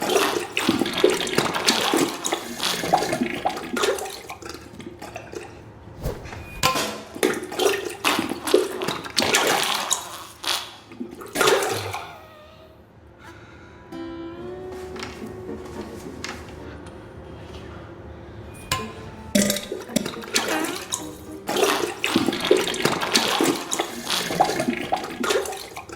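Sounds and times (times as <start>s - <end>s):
wet squirts into toilet water: 0.0s - 12.0s, 19.4s - 25.9s.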